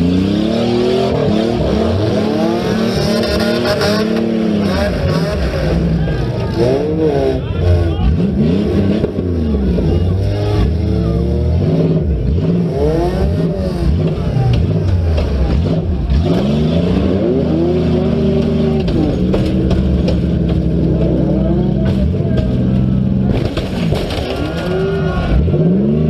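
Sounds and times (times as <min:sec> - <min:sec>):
car engines revving: 0:00.0 - 0:26.0
sharp knocks and clanks: 0:18.4 - 0:24.5.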